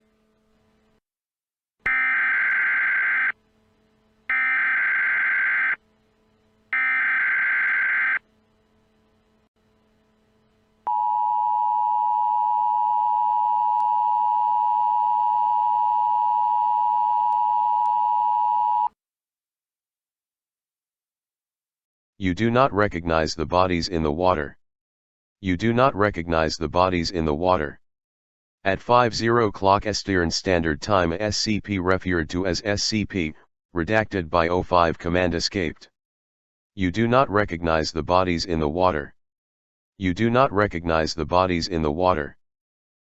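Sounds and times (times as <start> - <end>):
digital data bursts: 1.9 - 3.3, 4.3 - 5.8, 6.8 - 8.2
two-tone attention signal: 1.9 - 3.4, 4.3 - 5.8, 6.8 - 8.2.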